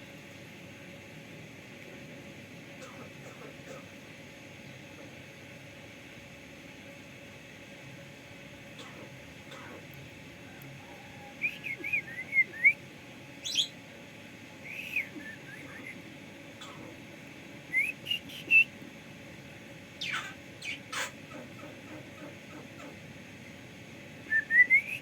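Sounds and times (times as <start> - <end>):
bird whistling and chirping: 11.4 - 12.8, 13.4 - 13.8, 14.6 - 16.0, 17.7 - 18.7, 20.0 - 21.1, 24.3 - 25.0.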